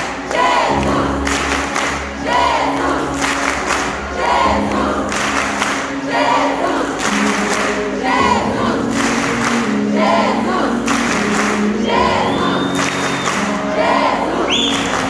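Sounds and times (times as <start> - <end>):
group of voices singing: 0.0 - 15.0
held bass notes: 6.7 - 15.0.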